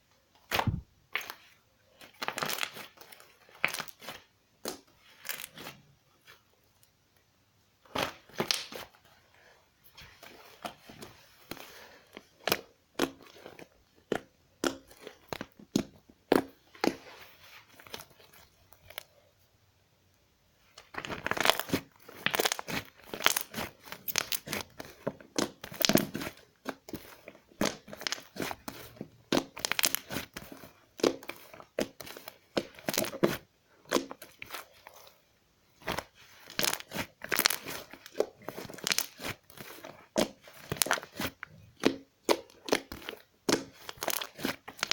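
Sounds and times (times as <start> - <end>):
slime crackling and popping: 2.1 - 5.7, 20.8 - 34.7, 35.8 - 44.9.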